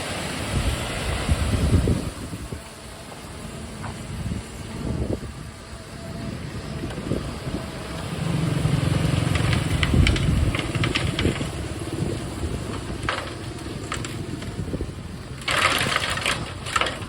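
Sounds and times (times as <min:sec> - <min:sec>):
diesel engine running: 0:00.0 - 0:17.0
clattering knocks: 0:09.1 - 0:14.6, 0:15.4 - 0:17.0.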